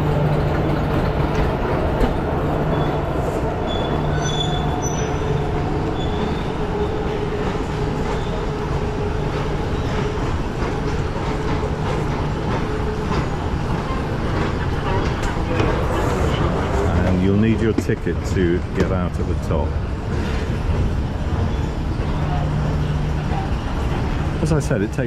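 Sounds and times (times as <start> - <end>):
train rumbling on rails: 0.0 - 25.0
high wheel squeal: 3.7 - 6.6.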